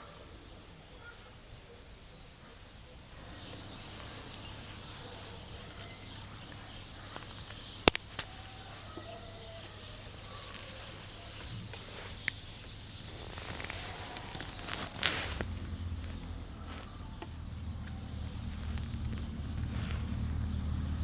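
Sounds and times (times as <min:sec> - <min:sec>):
sharp clicks of small objects: 0:03.5 - 0:08.5.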